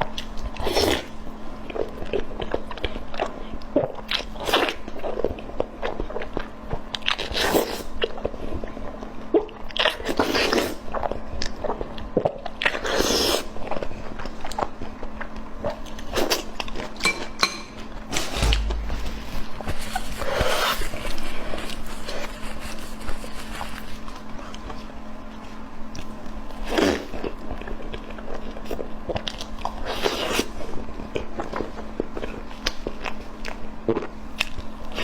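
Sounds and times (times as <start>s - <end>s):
steady low hum: 18.4s - 20.3s.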